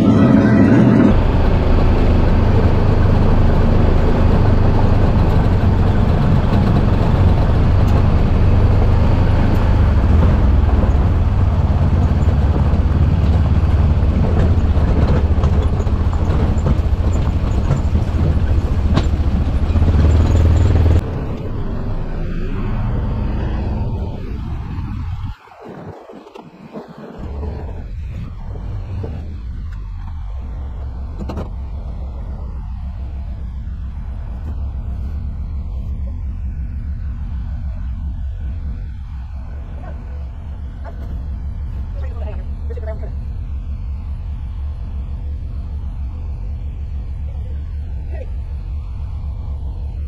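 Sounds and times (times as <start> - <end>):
excavator diesel engine running: 0.0 - 25.5.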